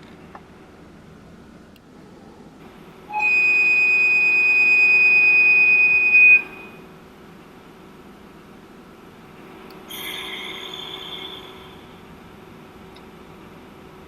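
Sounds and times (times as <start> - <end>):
faint steady hum: 0.0 - 14.0
locomotive whistle blast: 3.1 - 6.8.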